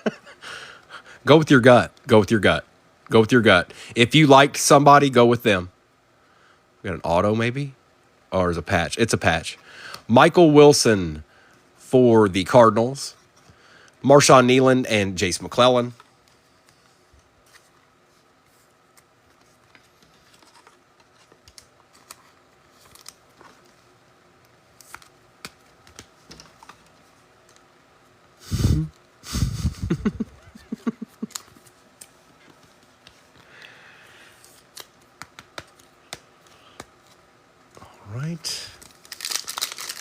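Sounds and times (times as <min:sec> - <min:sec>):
trading cards clicking: 0:34.6 - 0:37.1.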